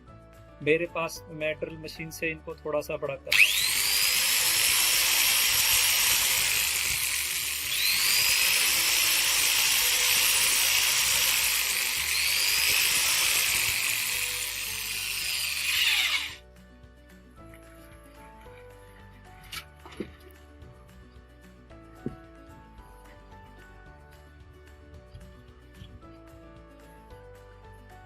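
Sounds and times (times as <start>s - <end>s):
electric drill whining: 3.3s - 16.4s.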